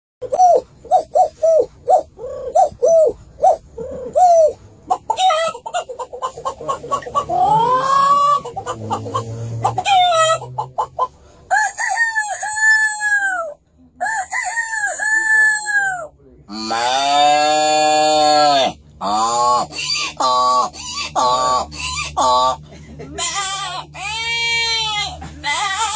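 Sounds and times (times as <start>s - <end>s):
man imitating chicken clucks: 0.2s - 25.9s.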